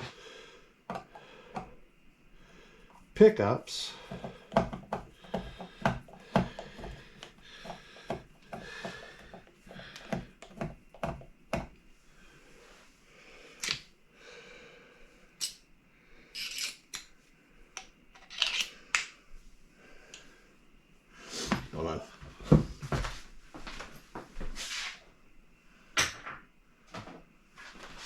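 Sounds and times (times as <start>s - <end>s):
metal parts scraping: 16.4s - 16.8s.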